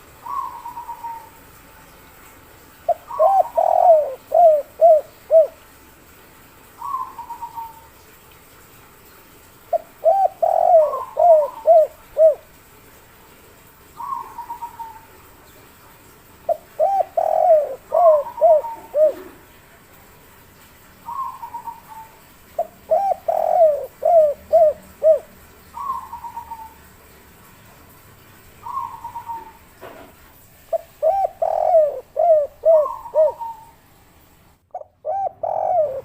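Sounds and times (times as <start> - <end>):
dove cooing: 0.1 - 1.4, 2.9 - 5.6, 6.8 - 7.9, 9.7 - 12.6, 13.9 - 15.2, 16.5 - 19.6, 21.0 - 26.8, 28.6 - 29.7, 30.7 - 33.8, 34.7 - 36.0
high trilling bird call: 0.2 - 1.3, 28.6 - 29.6.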